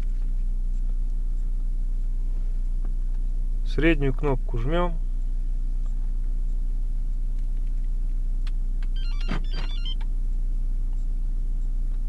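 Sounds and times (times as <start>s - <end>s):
engine idling hum: 0.0s - 12.0s.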